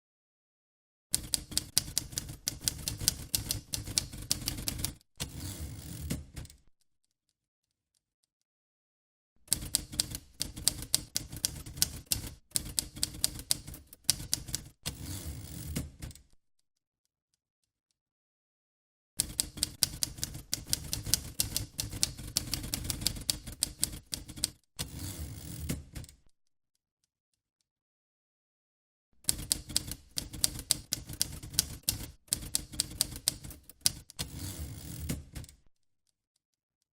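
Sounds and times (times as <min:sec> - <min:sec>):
typewriter keys striking: 0:01.2 - 0:05.0, 0:09.5 - 0:14.8, 0:19.2 - 0:24.6, 0:29.2 - 0:34.3.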